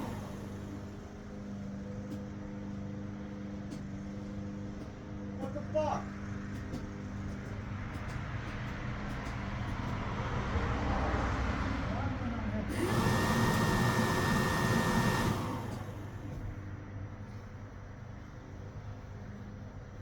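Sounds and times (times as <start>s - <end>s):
blower fan air rushing: 0.0s - 1.1s, 12.7s - 16.6s.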